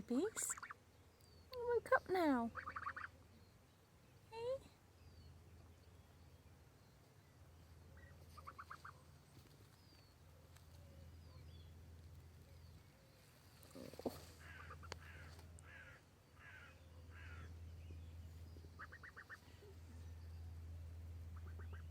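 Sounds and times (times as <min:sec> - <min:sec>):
goslings trilling: 0:00.2 - 0:00.8, 0:02.5 - 0:03.2, 0:08.0 - 0:09.0, 0:14.4 - 0:17.6, 0:18.7 - 0:19.4, 0:21.3 - 0:21.9.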